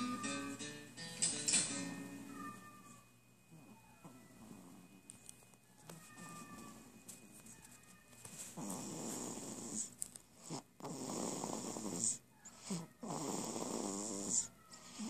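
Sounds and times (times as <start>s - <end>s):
person snoring: 8.6s - 15.0s.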